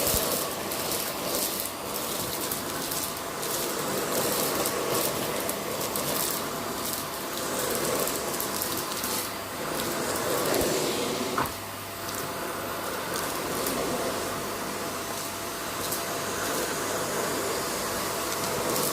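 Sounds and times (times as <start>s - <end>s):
vacuum cleaner whining: 0.0s - 18.9s.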